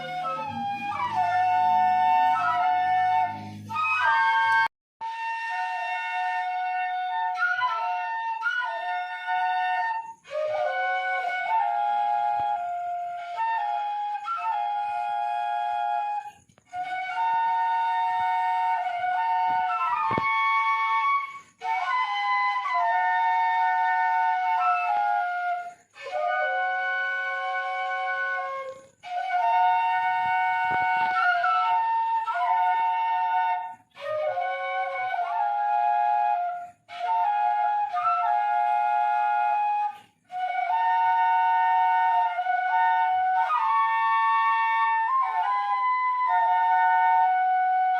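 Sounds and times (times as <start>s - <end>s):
bamboo flutes playing: 0.0s - 47.9s.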